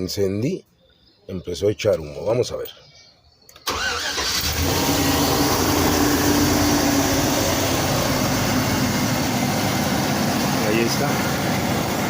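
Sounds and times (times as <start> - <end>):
van engine idling: 3.7 - 12.0.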